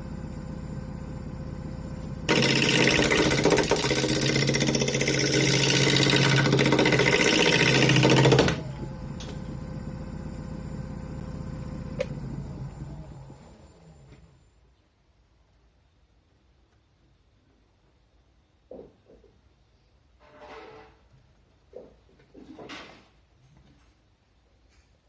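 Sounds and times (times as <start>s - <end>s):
lathe motor hum: 0.0s - 14.3s
tool scraping wood on lathe: 2.3s - 8.6s.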